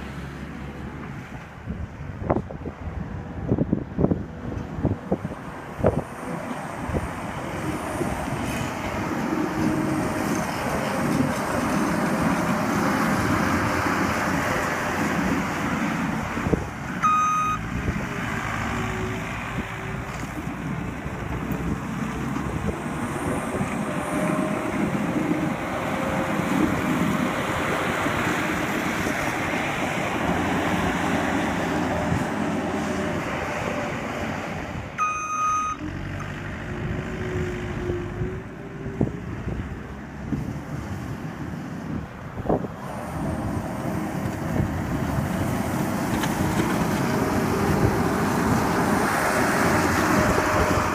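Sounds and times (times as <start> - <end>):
loader engine running: 3.0 - 50.9
backup alarm beeping: 17.0 - 17.6, 35.0 - 35.8.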